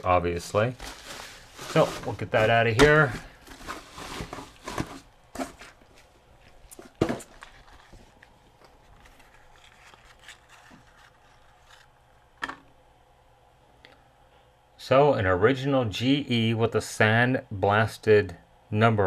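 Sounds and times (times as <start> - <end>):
cardboard box rustling and scraping: 0.8 - 6.0.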